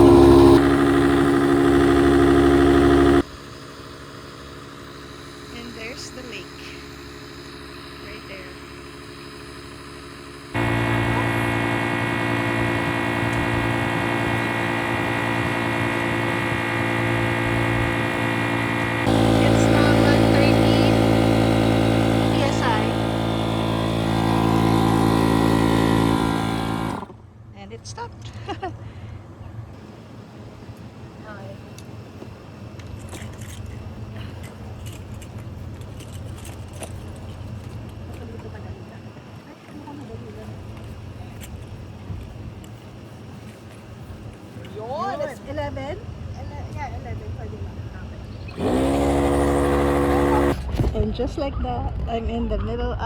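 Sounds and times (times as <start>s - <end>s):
electric inflation pump motor hum: 0.0s - 27.3s, 29.8s - 46.0s, 47.1s - 50.9s
steady low rumble: 50.7s - 53.0s.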